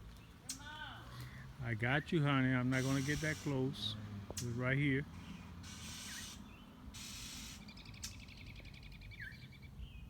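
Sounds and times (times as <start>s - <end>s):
songbirds chirping and chattering: 0.0s - 10.0s.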